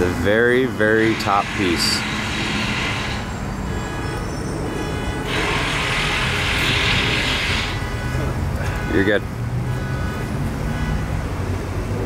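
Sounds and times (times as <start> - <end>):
diesel engine rumbling: 0.0 - 12.0
hiss: 1.2 - 3.4.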